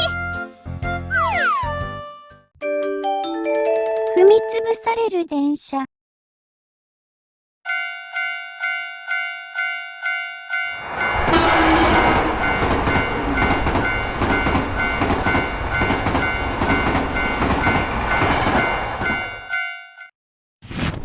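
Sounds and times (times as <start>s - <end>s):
crossing warning bell ringing: 7.7s - 20.1s
train wheels clickety-clack: 11.3s - 19.4s.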